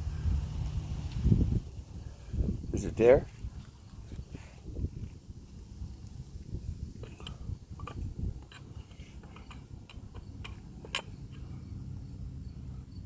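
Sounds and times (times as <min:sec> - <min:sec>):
low steady rumble: 0:00.0 - 0:13.0
clicks and taps of handling tools: 0:07.0 - 0:11.5.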